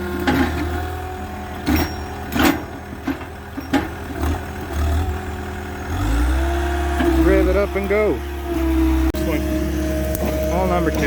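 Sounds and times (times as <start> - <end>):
drilling rig engine idling: 0.0 - 11.0.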